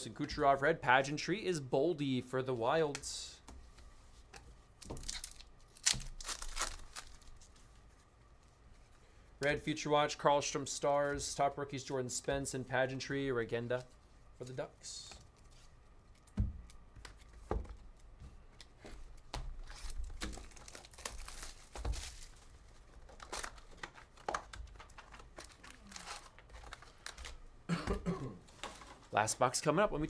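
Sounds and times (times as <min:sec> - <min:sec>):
wrappers tearing and crinkling: 0:04.8 - 0:07.6, 0:19.6 - 0:27.4.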